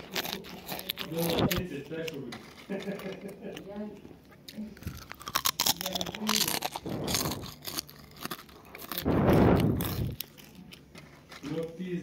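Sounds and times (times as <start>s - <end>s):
potato chips crunching: 0.0s - 12.0s.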